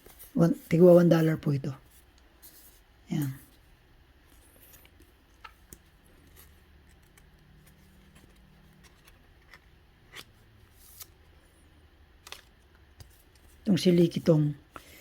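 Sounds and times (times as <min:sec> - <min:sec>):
trading cards clicking and rustling: 0:04.6 - 0:11.2, 0:12.2 - 0:14.2.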